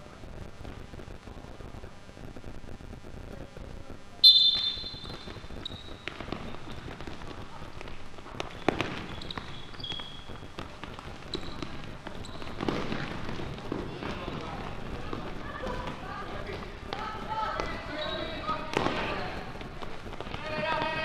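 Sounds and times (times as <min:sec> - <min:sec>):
distant players' voices: 0:00.0 - 0:21.0
referee's whistle blown sharply: 0:04.2 - 0:06.0
short high whistle-like tones: 0:04.2 - 0:06.6.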